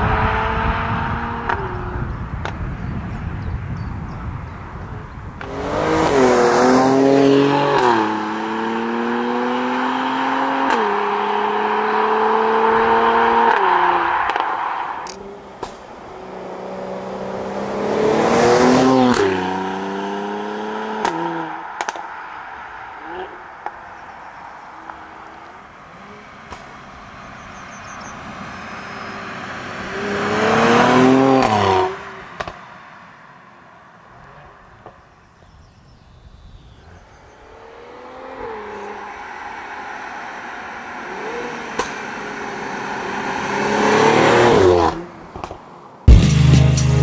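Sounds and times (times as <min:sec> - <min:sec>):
exhaust cracks: 0:00.0 - 0:03.1, 0:12.7 - 0:19.9, 0:20.8 - 0:35.2, 0:37.5 - 0:46.4
car engine accelerating: 0:00.0 - 0:35.8, 0:36.6 - 0:47.0.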